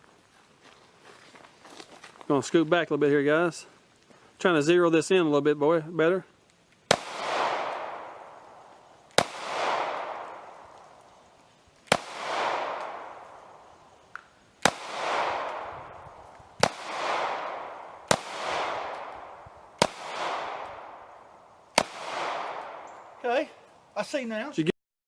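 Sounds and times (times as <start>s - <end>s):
pistol shots with echo: 6.9s - 10.8s, 11.9s - 13.6s, 14.6s - 21.1s, 21.7s - 23.0s.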